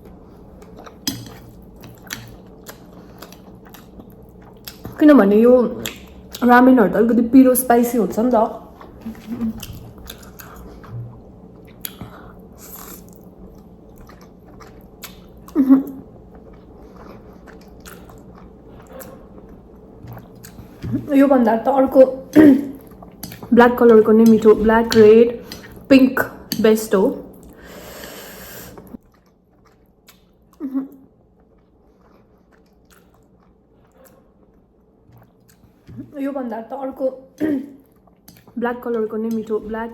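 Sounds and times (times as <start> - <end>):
chewing noodles: 0.5 - 5.0, 8.7 - 20.9, 28.8 - 35.8.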